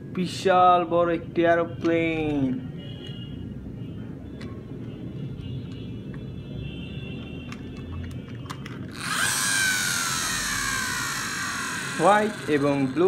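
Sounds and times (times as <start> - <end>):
toy motor whine falling in pitch: 8.9 - 13.0.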